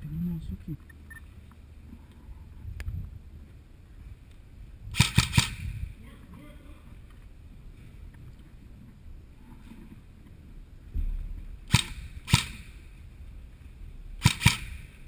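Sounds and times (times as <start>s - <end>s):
airsoft gun shots: 4.9s - 5.8s, 11.7s - 12.8s, 14.2s - 15.0s.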